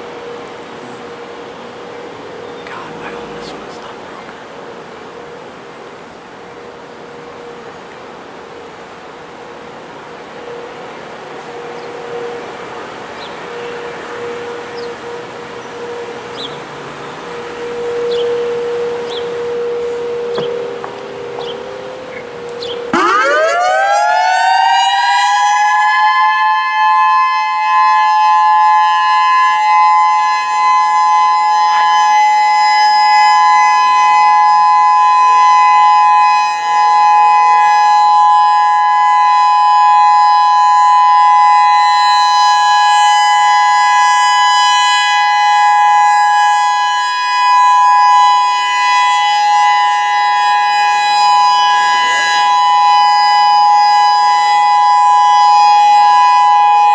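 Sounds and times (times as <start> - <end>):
electronic warning siren: 0.0 - 4.0, 4.6 - 56.9.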